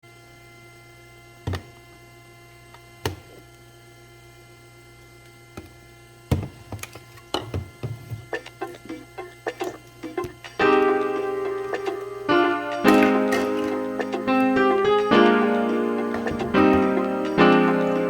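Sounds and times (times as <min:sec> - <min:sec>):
electrical hum: 0:00.1 - 0:18.0.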